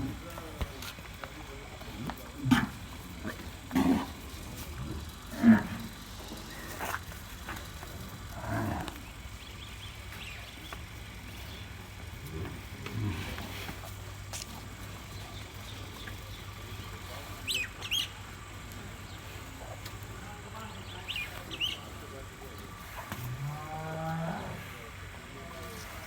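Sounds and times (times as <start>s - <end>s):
bulls lowing: 0.0s - 26.0s
bird chirping: 15.0s - 18.3s, 20.6s - 21.9s.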